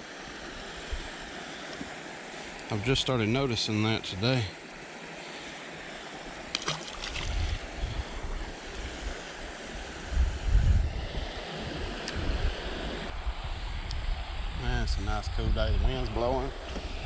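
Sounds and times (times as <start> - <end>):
creek water rushing: 0.0 - 13.4
wind buffeting the microphone: 7.0 - 17.0.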